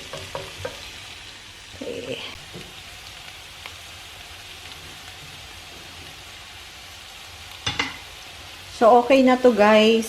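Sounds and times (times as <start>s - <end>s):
vegetables sizzling in a frying pan: 0.0s - 10.0s.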